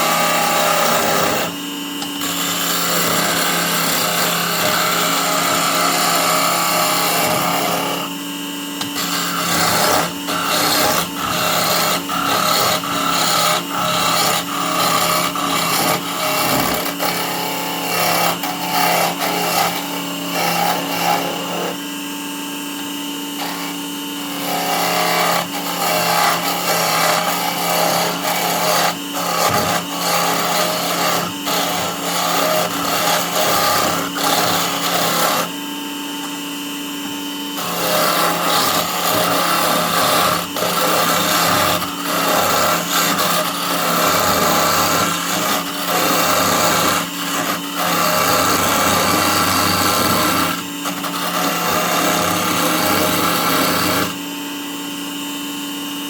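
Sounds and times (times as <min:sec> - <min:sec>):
tool scraping spinning wood: 0:00.0 - 0:55.1
lathe motor hum: 0:00.0 - 0:55.8.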